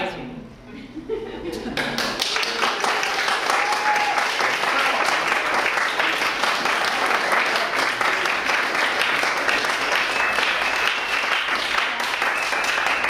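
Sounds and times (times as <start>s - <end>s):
audience clapping: 1.7s - 13.0s
high whistle: 9.8s - 13.0s.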